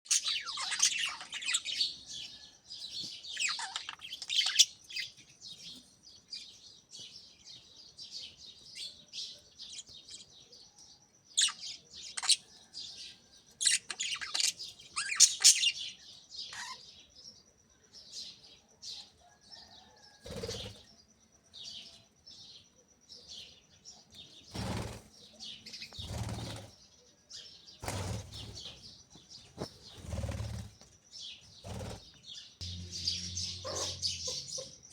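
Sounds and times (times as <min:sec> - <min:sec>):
budgerigars chirping: 0:00.1 - 0:02.0, 0:03.3 - 0:05.2, 0:11.4 - 0:12.5, 0:13.6 - 0:16.8, 0:32.6 - 0:34.9.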